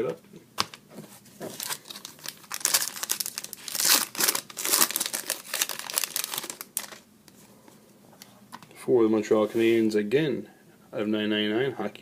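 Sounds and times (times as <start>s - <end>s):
plastic wrapper crinkling and tearing: 1.5s - 7.0s.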